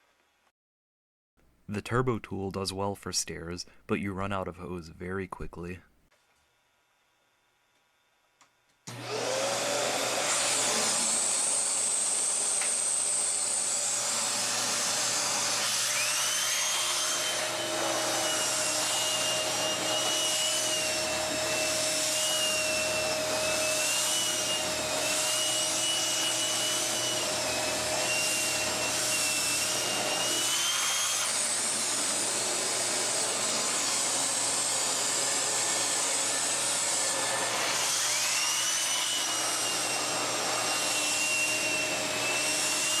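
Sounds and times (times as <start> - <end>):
vacuum cleaner running: 8.8 - 43.0
whistling whine of turbo tool: 8.9 - 31.6, 33.6 - 43.0.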